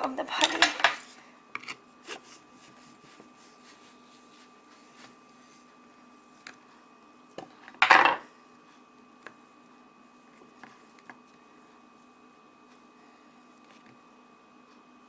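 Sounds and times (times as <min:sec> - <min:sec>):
objects clattering: 0:07.8 - 0:08.2.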